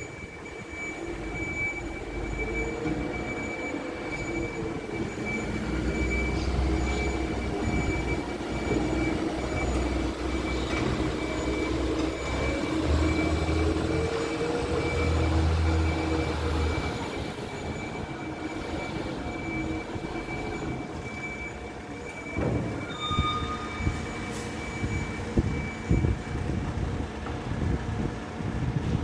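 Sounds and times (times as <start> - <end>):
truck engine whining: 0.0 - 29.0
metal knocks and clanks: 22.2 - 25.0.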